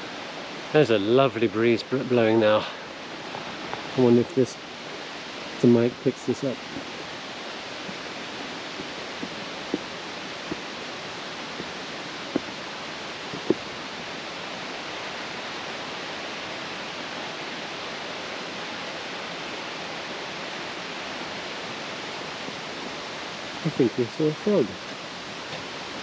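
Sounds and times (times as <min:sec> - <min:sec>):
breeze through leaves: 0:00.0 - 0:26.0
faint taps: 0:12.3 - 0:12.5, 0:13.3 - 0:13.6.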